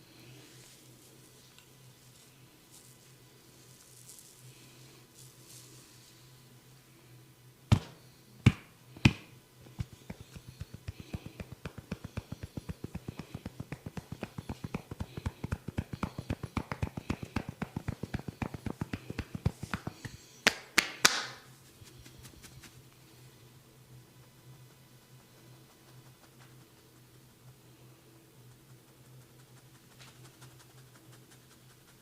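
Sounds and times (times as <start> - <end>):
hands tapping on a head: 7.7 - 21.4
loud sharp finger snaps: 7.7 - 21.5.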